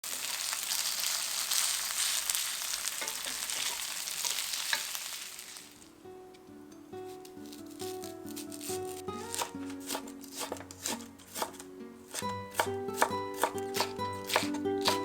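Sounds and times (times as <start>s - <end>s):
batter sizzling in frying pan: 0.0s - 5.9s
music: 5.8s - 15.0s.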